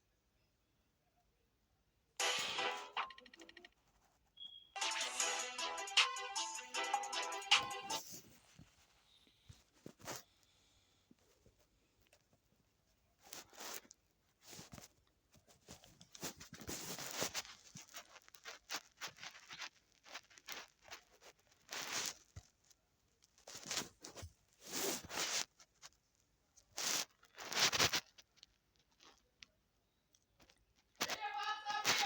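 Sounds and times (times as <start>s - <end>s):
rustling and scraping: 7.9s - 10.4s, 11.2s - 29.2s.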